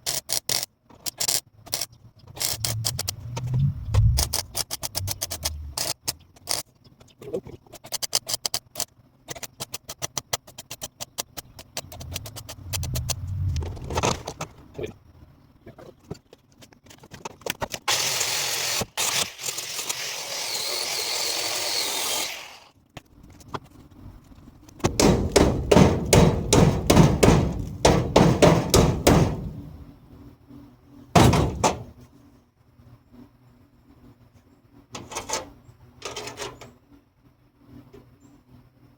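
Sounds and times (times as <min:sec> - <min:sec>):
loud hammer knocks: 0:24.9 - 0:29.8.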